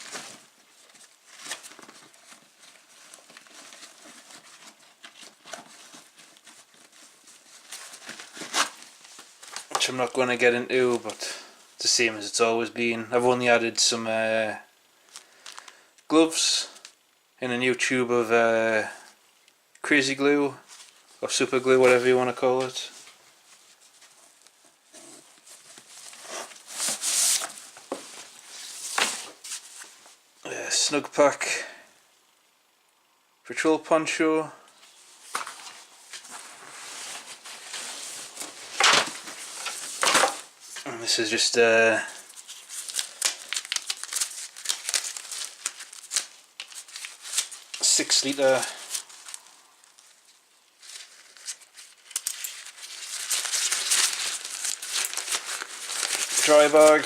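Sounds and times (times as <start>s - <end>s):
gear rustling and handling: 0.0s - 9.9s, 20.6s - 30.2s, 34.8s - 57.0s
pouch rustling: 50.8s - 57.0s.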